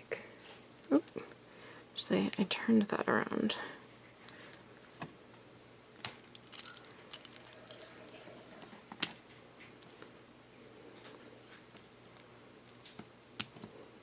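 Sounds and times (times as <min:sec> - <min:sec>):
plastic pieces clicking together: 0:06.0 - 0:07.6.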